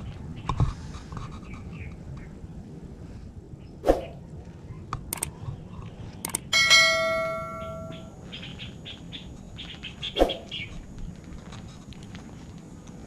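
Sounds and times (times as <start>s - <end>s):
sharp clicks: 5.0s - 5.4s, 6.2s - 6.5s
high chirps of birds or insects: 6.5s - 10.9s
metallic bell ring: 6.6s - 8.1s.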